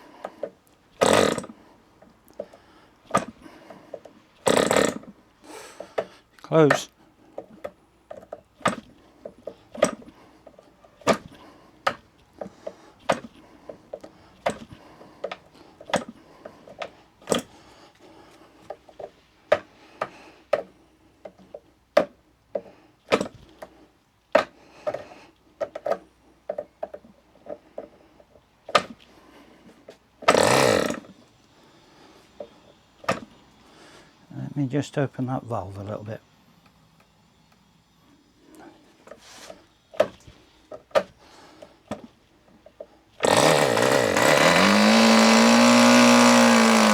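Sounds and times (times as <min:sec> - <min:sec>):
propeller flicked by hand clacking: 0:00.2 - 0:05.2, 0:05.8 - 0:17.5, 0:39.9 - 0:46.9
model engine firing burst: 0:43.2 - 0:46.9.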